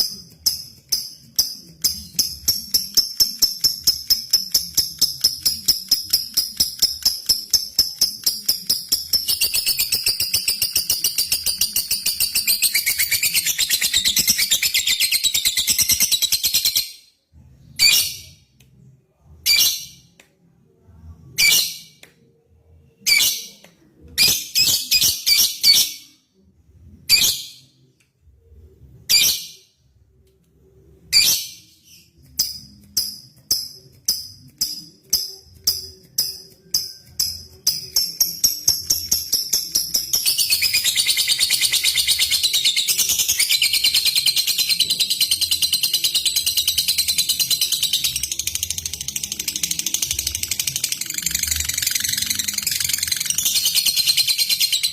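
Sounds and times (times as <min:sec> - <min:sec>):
sharp bird chirps: 0:00.8 - 0:17.0.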